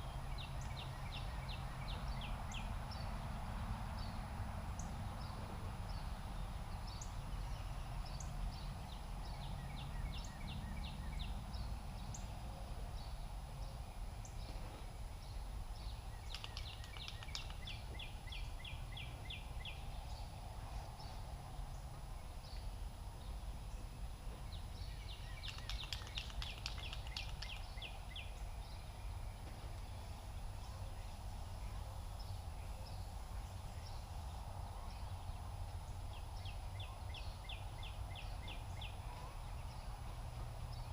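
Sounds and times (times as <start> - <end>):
small songbird trilling: 16.1 - 18.7, 25.0 - 28.2.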